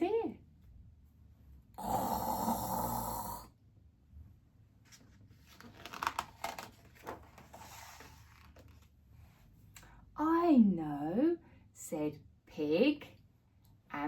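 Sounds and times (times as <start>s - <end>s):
woman imitating a snore: 1.8s - 3.5s.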